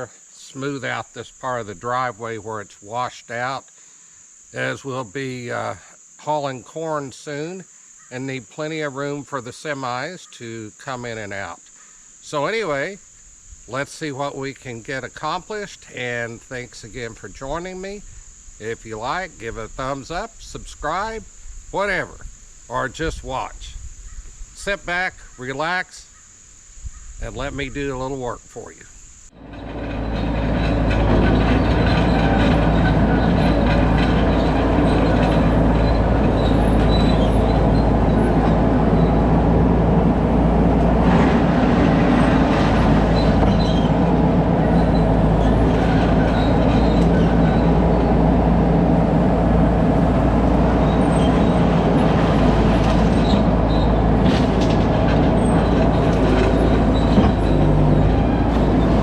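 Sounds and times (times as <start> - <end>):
skid steer engine running: 29.3 - 59.0.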